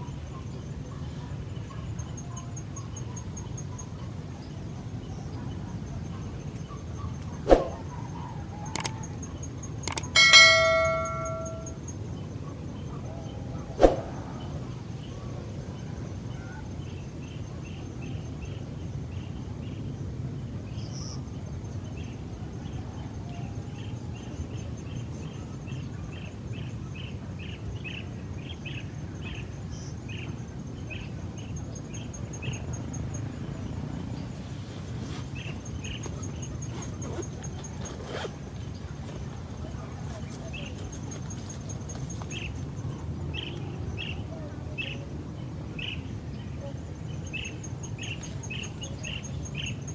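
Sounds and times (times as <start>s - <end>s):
small bird chirping: 8.7s - 11.8s
sharp click: 8.8s - 9.0s, 9.9s - 11.7s.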